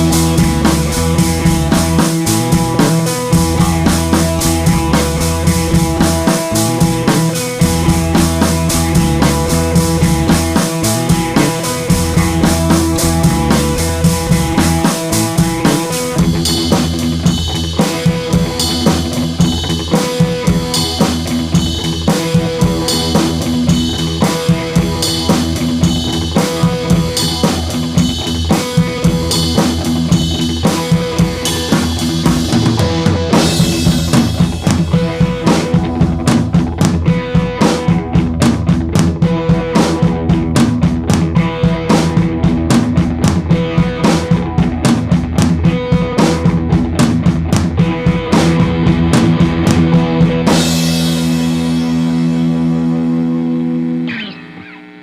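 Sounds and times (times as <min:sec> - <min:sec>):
deep bass notes: 0:00.0 - 0:54.4
music with drum kit beat: 0:00.0 - 0:54.8.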